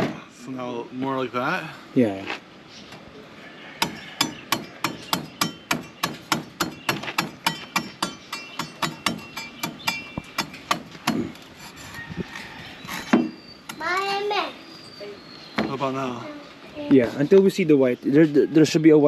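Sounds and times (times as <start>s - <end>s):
machete chopping coconut husk: 3.8s - 11.5s.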